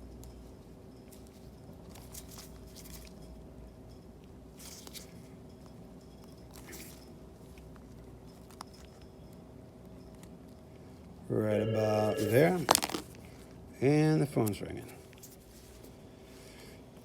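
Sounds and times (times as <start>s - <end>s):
tools rustling and scraping: 12.1s - 13.2s.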